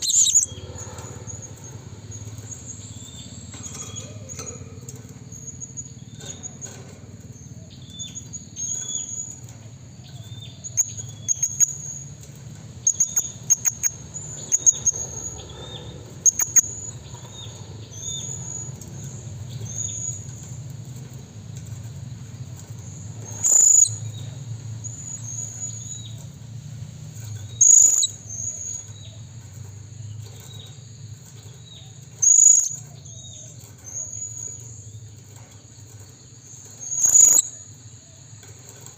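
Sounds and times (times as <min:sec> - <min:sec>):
parrot calling: 0:00.0 - 0:00.6, 0:12.9 - 0:15.4, 0:23.4 - 0:24.0, 0:27.6 - 0:28.2, 0:36.9 - 0:37.6
steady low hum: 0:00.0 - 0:38.9.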